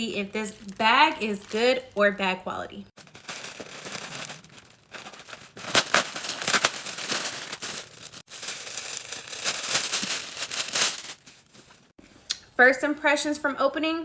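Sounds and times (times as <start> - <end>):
packaging torn and crinkled: 3.0 - 11.9.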